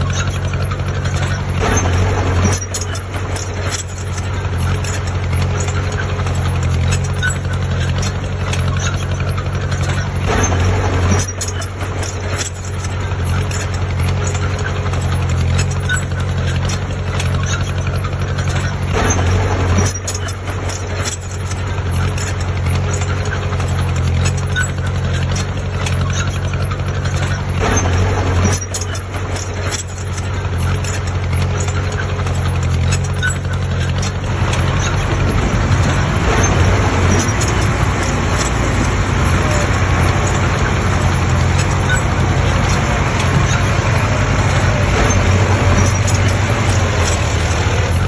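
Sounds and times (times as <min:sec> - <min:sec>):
diesel engine running: 0:00.0 - 0:48.0
knocks: 0:09.8 - 0:13.6, 0:34.2 - 0:48.0.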